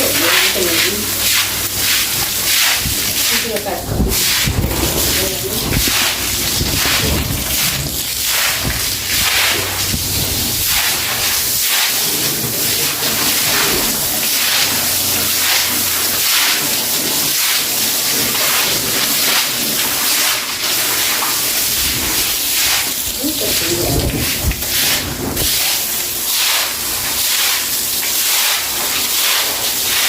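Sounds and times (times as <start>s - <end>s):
watery hiss: 0.0s - 17.6s
broom scrubbing wet floor: 0.0s - 30.0s.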